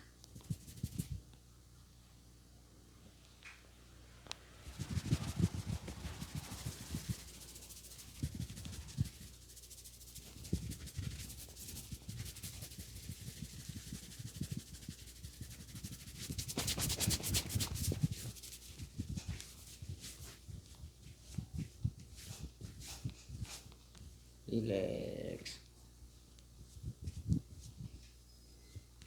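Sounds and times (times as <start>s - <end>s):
hands rubbing hair and scalp: 0.4s - 1.2s, 4.6s - 23.7s.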